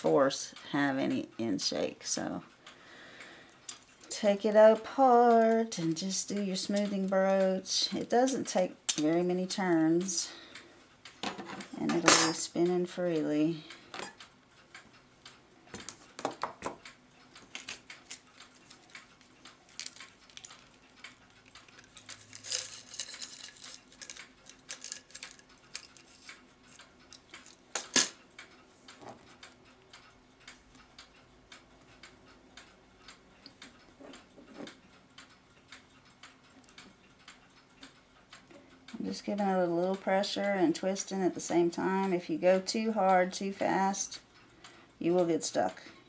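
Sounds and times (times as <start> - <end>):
metallic clinks of clock parts: 17.4 - 28.2.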